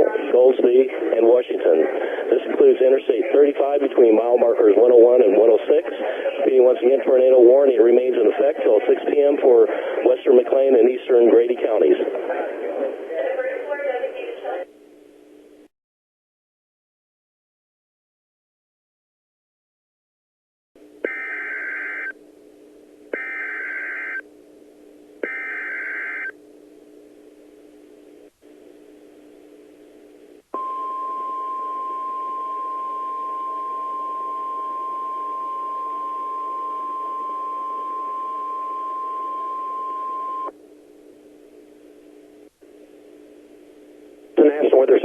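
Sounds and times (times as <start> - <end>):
faint radio hiss: 0.0 - 15.7, 21.0 - 30.6, 33.2 - 45.0
data header tone bursts: 21.0 - 22.1, 23.2 - 24.2, 25.2 - 26.3
steady warning alarm tone: 21.0 - 22.2, 23.2 - 24.2, 25.2 - 26.4, 30.6 - 40.5.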